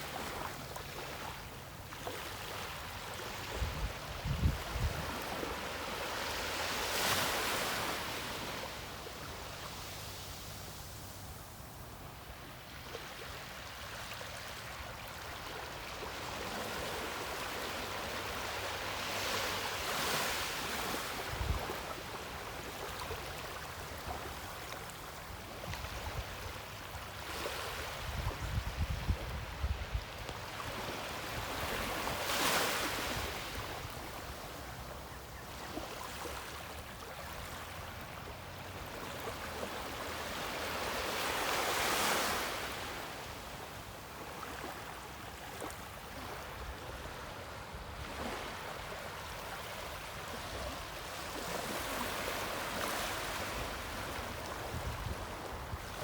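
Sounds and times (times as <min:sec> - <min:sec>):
wind rumble on microphone: 0:03.5 - 0:05.5, 0:27.9 - 0:30.5, 0:54.4 - 0:56.0.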